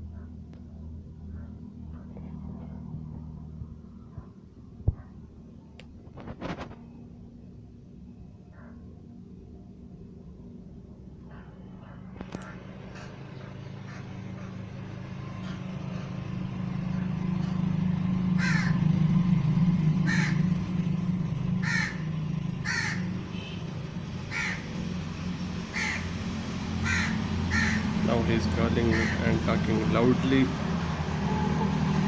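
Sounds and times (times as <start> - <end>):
crows cawing: 12.3 - 14.7, 15.4 - 16.2, 18.3 - 18.9, 20.0 - 20.8, 21.5 - 23.4, 24.3 - 24.8, 25.7 - 26.2, 26.8 - 28.0, 28.8 - 29.4.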